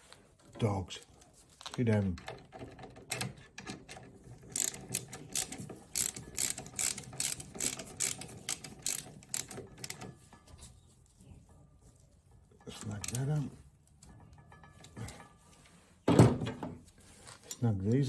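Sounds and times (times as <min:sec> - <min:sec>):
ratchet wrench clicking: 0:04.5 - 0:10.0.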